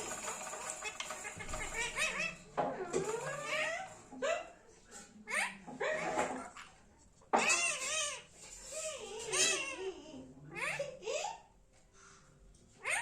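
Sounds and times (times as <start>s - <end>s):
parrot calling and chattering: 0.7s - 4.6s, 5.2s - 11.5s, 12.8s - 13.0s.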